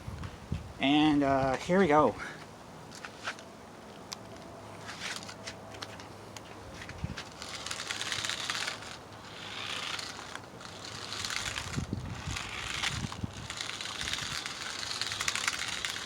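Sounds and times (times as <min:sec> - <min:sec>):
remote-control car driving: 0:07.2 - 0:16.0.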